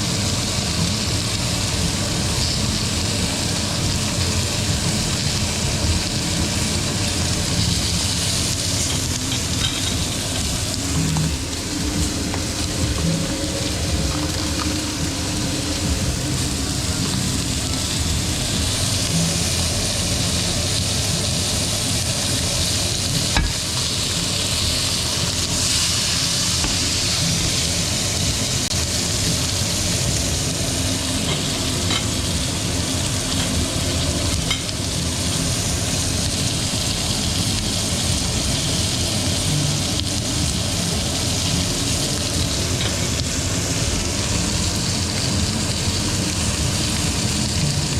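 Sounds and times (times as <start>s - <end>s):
steak sizzling in a pan: 0.0s - 47.9s.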